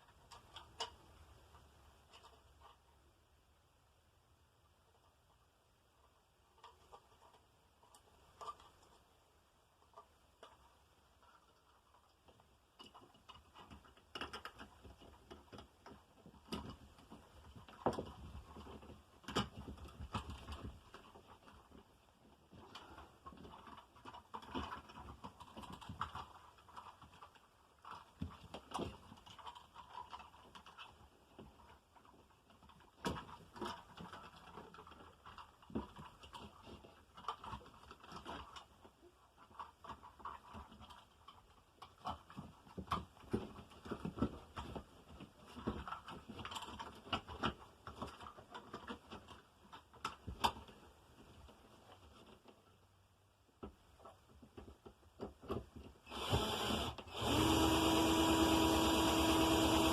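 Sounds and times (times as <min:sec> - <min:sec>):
hands handling cable and tools: 0:09.9 - 0:57.8.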